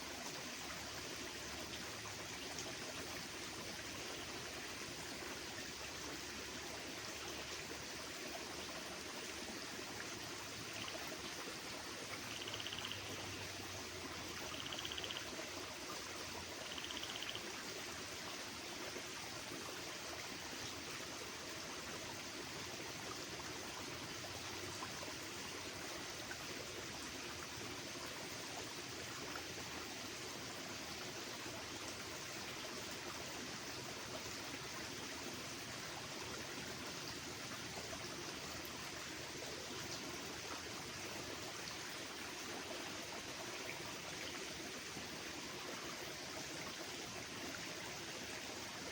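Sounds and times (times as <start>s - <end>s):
flowing water rushing: 0.0s - 48.9s
small bird chirping: 12.3s - 13.1s, 14.5s - 15.2s, 16.6s - 17.4s.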